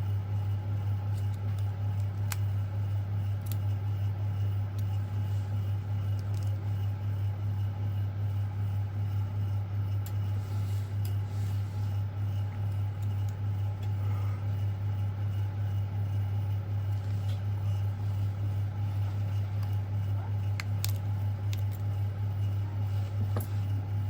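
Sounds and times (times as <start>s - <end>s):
low electrical hum: 0.0s - 24.0s.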